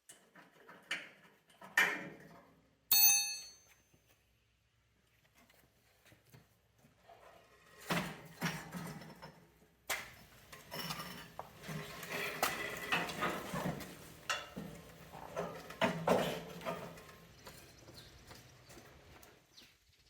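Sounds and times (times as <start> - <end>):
metal clinking and scraping: 10.5 - 17.8.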